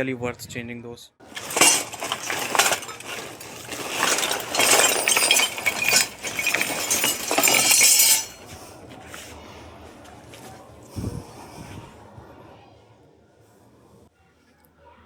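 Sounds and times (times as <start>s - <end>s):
metal parts clattering: 1.2s - 9.3s.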